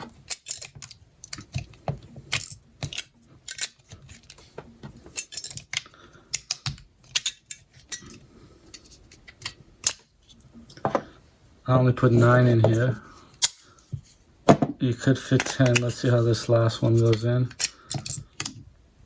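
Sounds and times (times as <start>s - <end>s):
cartridges clicking into magazine: 0.3s - 1.4s, 17.5s - 18.5s.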